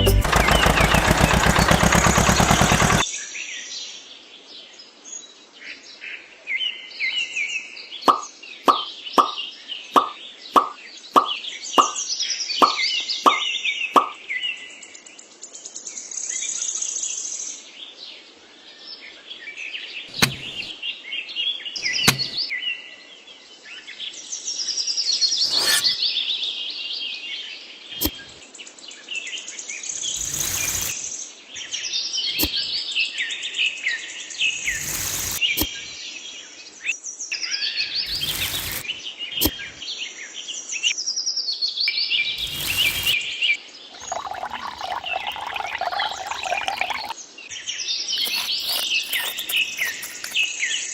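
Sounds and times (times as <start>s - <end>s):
small birds chirping: 8.0s - 14.2s
plops: 8.1s - 9.4s, 10.0s - 12.0s, 12.6s - 13.4s, 44.0s - 47.2s
sharp knocks: 8.1s - 9.4s, 12.6s - 13.4s.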